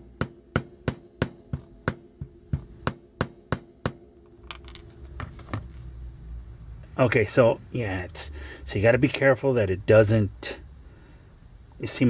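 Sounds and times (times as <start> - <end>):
small hammer tapping: 0.2 - 4.9.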